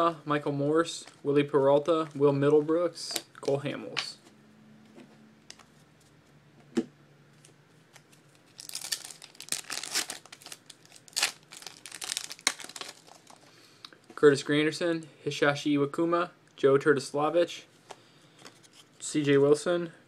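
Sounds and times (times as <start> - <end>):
foil wrapper tearing and crinkling: 8.4 - 13.4.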